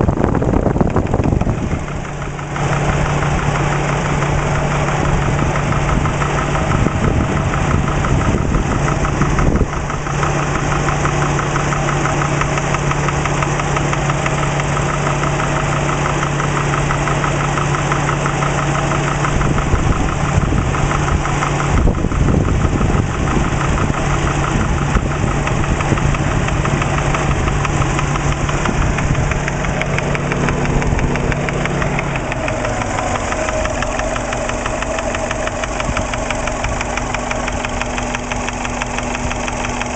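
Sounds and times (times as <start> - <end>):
car engine idling: 0.0 - 39.9
fast even engine knocking tap: 0.0 - 39.9.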